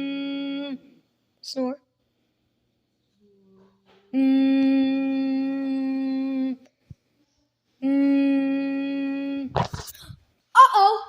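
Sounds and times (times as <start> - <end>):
child humming: 4.1 - 6.7, 7.8 - 10.2.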